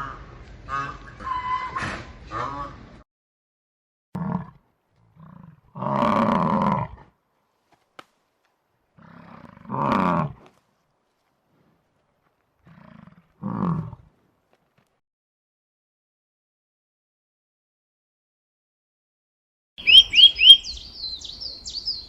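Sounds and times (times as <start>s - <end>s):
large animal calling: 19.8s - 22.0s.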